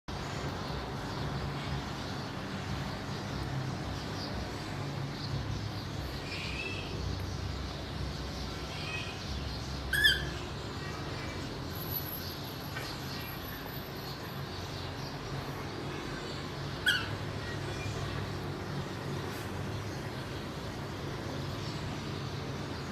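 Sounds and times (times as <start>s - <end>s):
parrot squawking: 9.9s - 10.9s, 16.7s - 18.0s.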